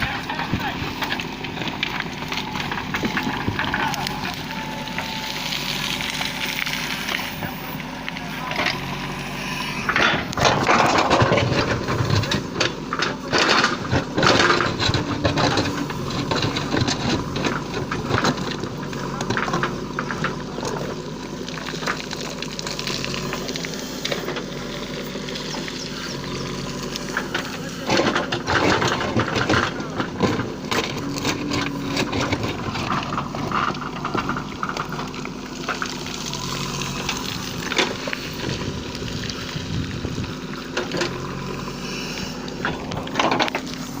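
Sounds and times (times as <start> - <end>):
diesel engine running: 0.0 - 44.0
knocks and clatter: 9.9 - 20.9, 27.1 - 35.8.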